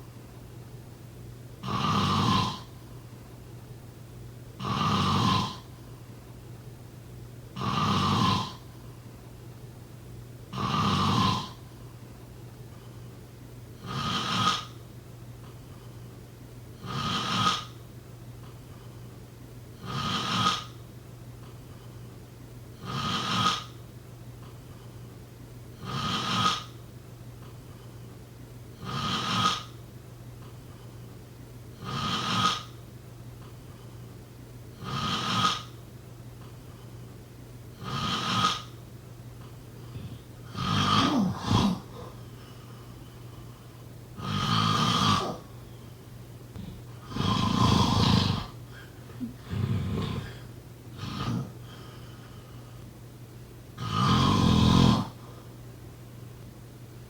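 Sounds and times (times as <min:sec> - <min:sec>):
person snoring: 0:01.6 - 0:02.7, 0:04.6 - 0:05.7, 0:07.6 - 0:08.6, 0:10.5 - 0:11.6, 0:13.8 - 0:14.7, 0:16.8 - 0:17.7, 0:19.8 - 0:20.7, 0:22.8 - 0:23.7, 0:28.8 - 0:29.7, 0:31.8 - 0:32.7, 0:34.8 - 0:35.7, 0:37.8 - 0:38.7, 0:39.9 - 0:42.2, 0:44.2 - 0:45.5, 0:46.5 - 0:52.3, 0:53.8 - 0:55.4.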